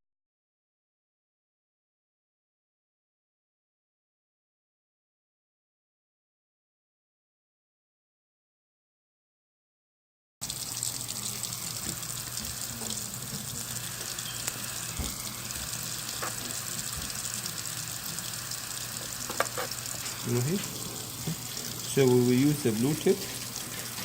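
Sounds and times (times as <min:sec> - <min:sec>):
gas torch hissing: 0:11.1 - 0:24.0.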